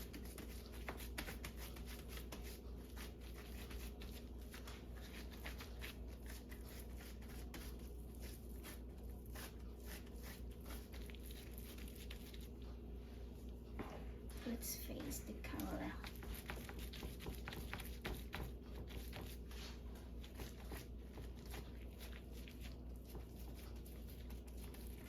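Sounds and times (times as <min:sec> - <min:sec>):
low steady hum: 0:00.0 - 0:25.0.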